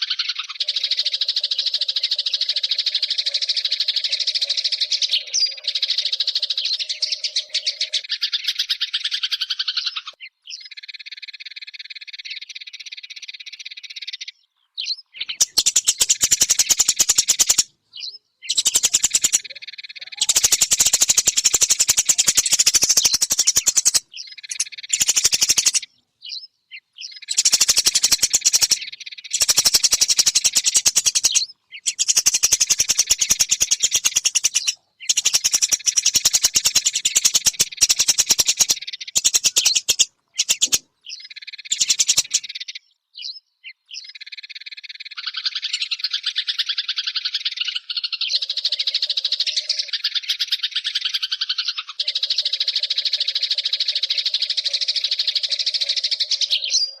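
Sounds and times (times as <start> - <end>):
sparrows chirping: 0.0 - 57.0.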